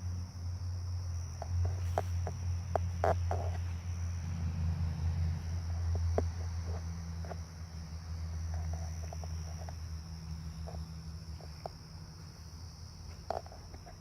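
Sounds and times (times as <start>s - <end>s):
constant low hum: 0.0s - 14.0s
crickets chirping: 0.0s - 14.0s
footsteps crunching on ground: 1.7s - 2.4s.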